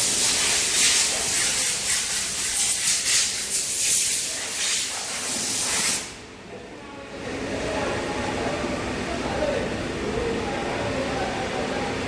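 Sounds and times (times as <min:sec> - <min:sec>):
loud hiss of air spray: 0:00.0 - 0:06.2.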